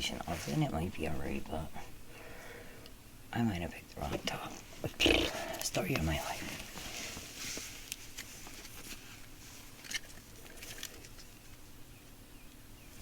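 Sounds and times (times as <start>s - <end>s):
clothing rustling: 5.4s - 11.2s.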